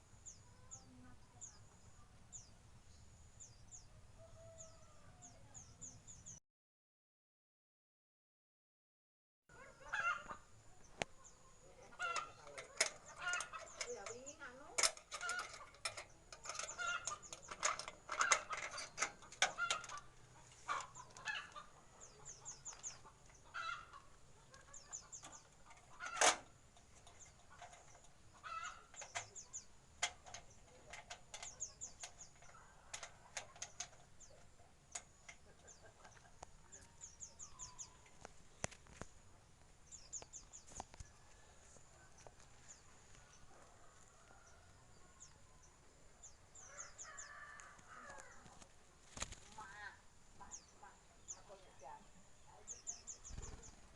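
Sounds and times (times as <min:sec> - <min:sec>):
small birds chirping: 0:00.0 - 0:06.4, 0:09.5 - 0:53.9
wingbeats: 0:48.5 - 0:49.9, 0:53.1 - 0:53.9.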